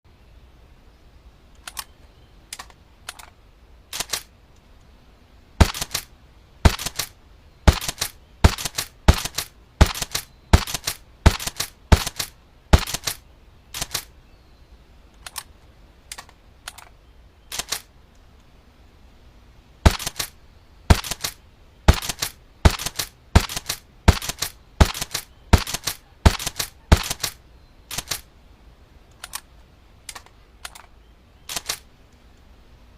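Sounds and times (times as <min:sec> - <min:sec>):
faint clicks: 0:01.5 - 0:05.0, 0:15.1 - 0:18.6, 0:29.0 - 0:32.5.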